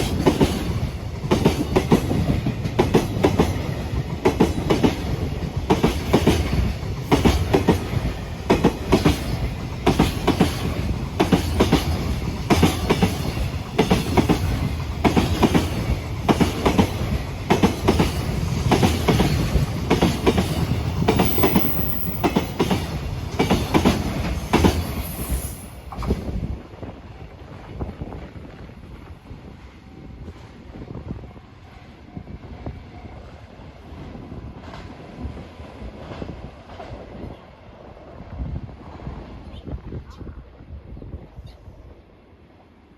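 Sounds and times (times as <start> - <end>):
freight train wheels clacking: 0.0 - 26.3.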